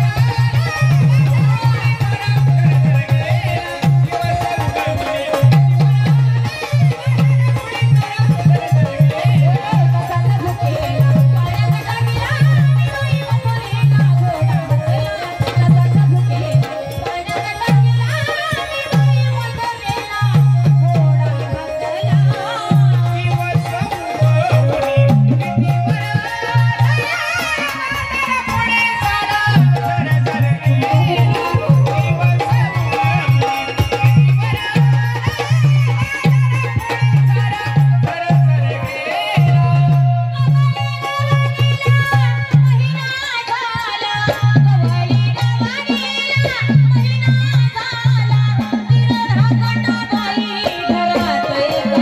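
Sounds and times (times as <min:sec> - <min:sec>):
hand drum beat: 0:18.9 - 0:43.0.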